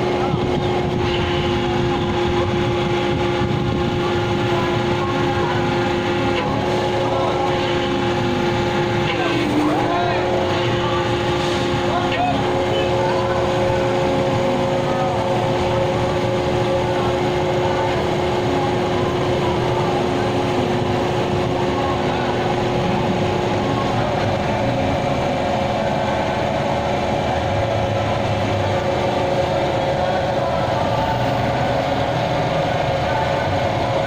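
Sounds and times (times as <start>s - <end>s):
engine whining and rumbling: 0.0s - 34.0s.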